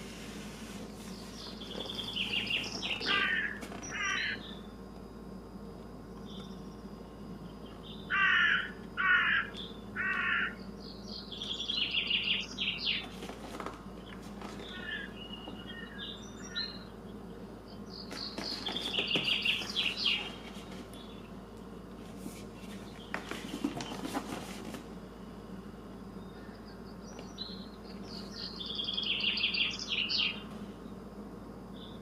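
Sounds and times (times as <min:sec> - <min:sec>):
harsh bird caws: 0:02.2 - 0:04.6, 0:08.0 - 0:10.7, 0:14.6 - 0:16.8
high bird twittering: 0:27.0 - 0:30.4.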